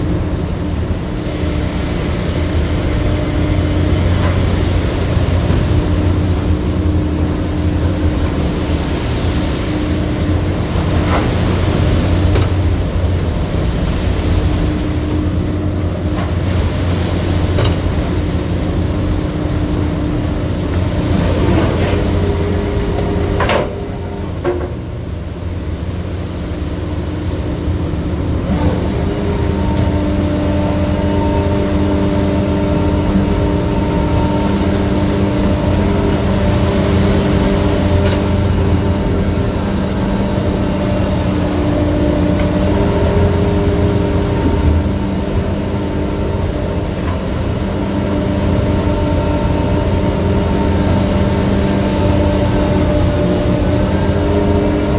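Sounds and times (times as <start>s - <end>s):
boat engine and machinery humming: 0.0s - 54.9s
machinery whining tones: 27.6s - 54.9s.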